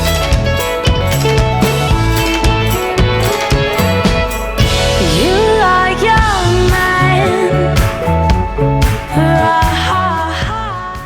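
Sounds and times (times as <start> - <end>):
pop song with singing: 4.7 - 11.0.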